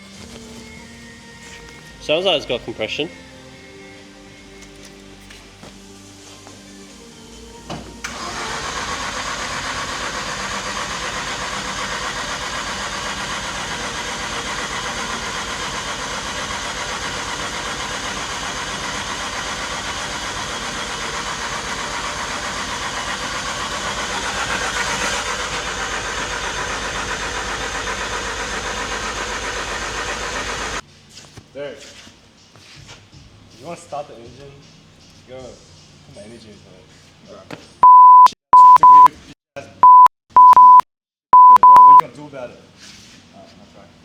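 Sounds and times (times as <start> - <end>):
car engine starting and running: 8.0 - 30.8, 37.8 - 39.1, 39.8 - 40.8, 41.4 - 42.0.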